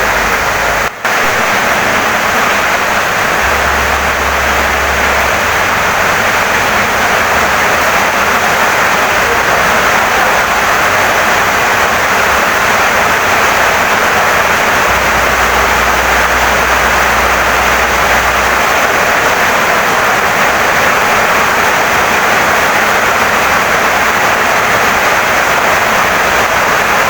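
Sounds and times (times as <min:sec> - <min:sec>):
low hum: 0:00.0 - 0:19.8
heavy rain pouring: 0:00.0 - 0:27.0.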